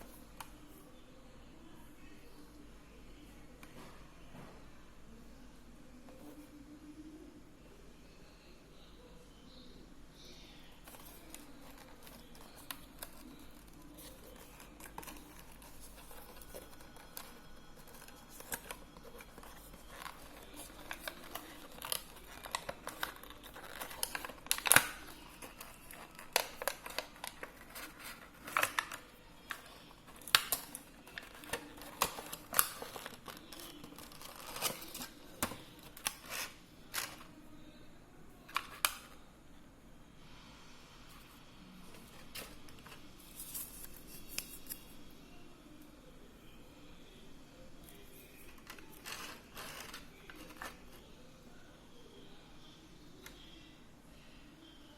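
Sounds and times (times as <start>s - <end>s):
packaging rustling and clicking: 10.8s - 37.3s, 48.2s - 51.0s.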